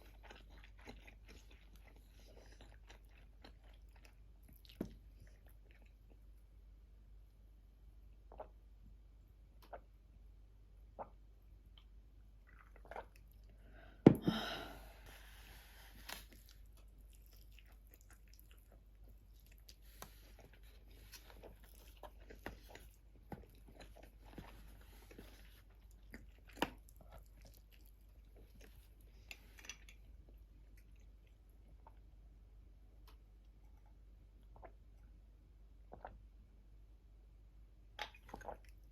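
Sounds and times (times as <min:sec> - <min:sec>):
crunchy chewing: 0:16.0 - 0:29.9.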